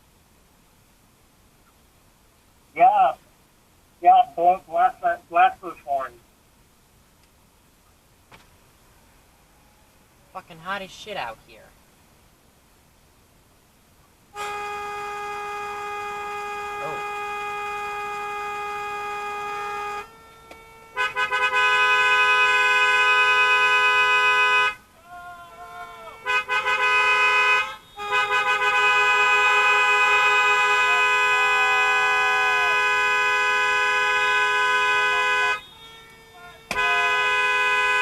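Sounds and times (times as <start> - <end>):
car horns honking together: 14.3 - 24.8, 26.1 - 38.0.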